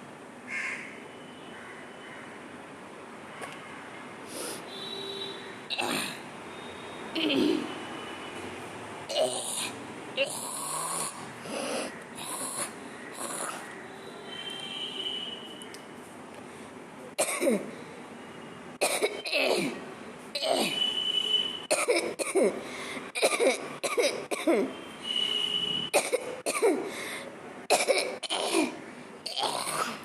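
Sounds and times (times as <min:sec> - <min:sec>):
person coughing: 0:05.7 - 0:06.2, 0:07.2 - 0:07.8, 0:17.2 - 0:17.7, 0:18.8 - 0:19.8, 0:20.4 - 0:20.8, 0:21.7 - 0:22.6, 0:23.2 - 0:24.8, 0:26.0 - 0:26.9, 0:27.7 - 0:30.0.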